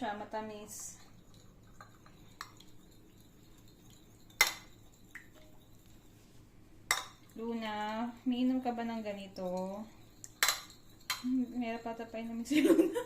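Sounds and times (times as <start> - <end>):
utensils clinking against dishes: 6.9 - 13.0.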